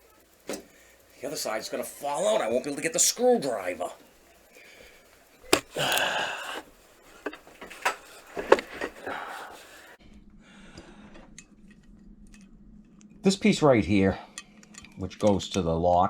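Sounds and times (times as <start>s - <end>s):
faint steady hum: 0.0s - 16.0s
man breathing hard: 4.6s - 6.8s, 8.0s - 11.4s.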